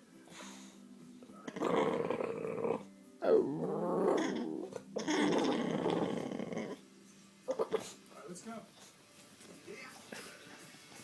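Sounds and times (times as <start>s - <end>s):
dog making growly moaning cries: 1.4s - 6.9s, 7.5s - 8.0s.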